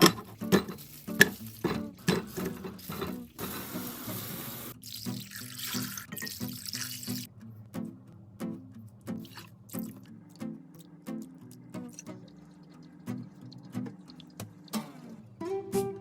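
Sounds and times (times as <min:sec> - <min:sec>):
tap water running into sink: 0:00.4 - 0:07.3.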